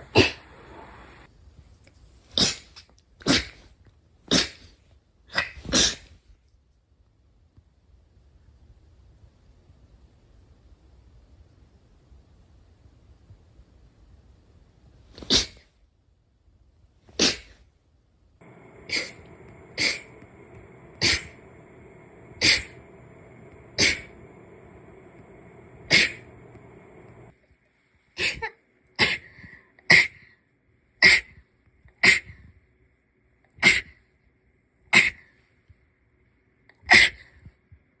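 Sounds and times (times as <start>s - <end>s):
person sneezing: 0.0s - 0.5s, 2.3s - 3.7s, 4.3s - 6.2s, 15.2s - 15.7s, 17.1s - 17.6s, 18.4s - 24.5s, 25.8s - 27.0s, 28.2s - 30.3s, 31.0s - 31.4s, 32.0s - 32.5s, 33.6s - 34.0s, 34.9s - 35.4s, 36.8s - 37.5s.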